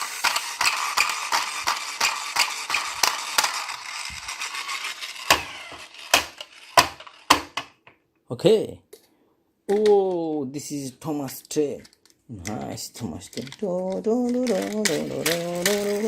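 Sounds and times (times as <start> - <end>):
plastic toys rattling: 0.0 - 7.9, 11.2 - 16.0.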